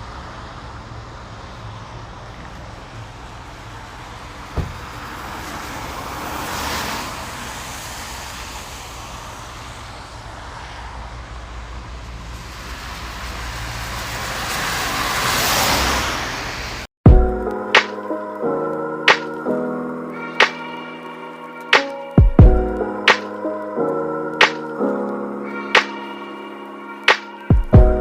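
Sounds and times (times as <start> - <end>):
tyre and road noise: 0.0 - 18.1.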